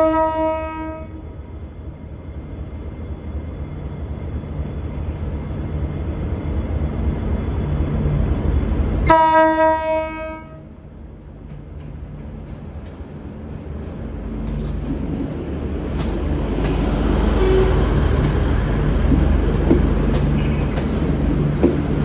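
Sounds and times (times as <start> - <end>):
low train horn blast: 0.0 - 1.3, 9.0 - 10.8, 16.9 - 18.9
train engines rumbling: 0.0 - 22.0.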